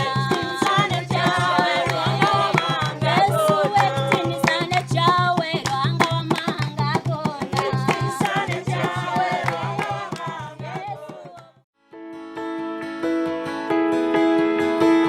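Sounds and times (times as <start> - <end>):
person singing: 0.0 - 4.9
hand drum beat: 0.0 - 11.6
music with held notes: 11.8 - 15.0.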